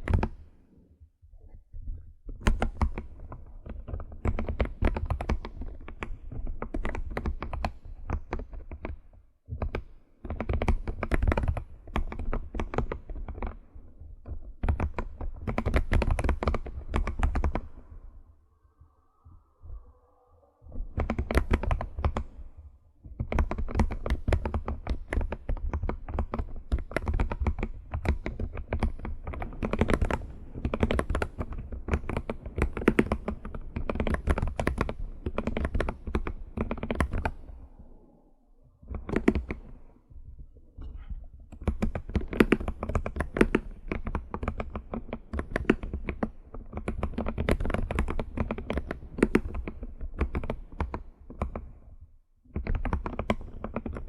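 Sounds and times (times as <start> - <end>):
fast typing on keyboard: 9.6 - 13.5, 14.6 - 17.8, 23.2 - 37.5, 41.5 - 51.7, 52.6 - 54.0.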